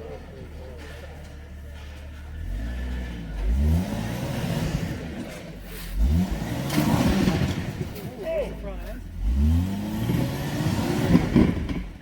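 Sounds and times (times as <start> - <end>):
vehicle engine revving: 2.3 - 8.1, 9.0 - 12.0.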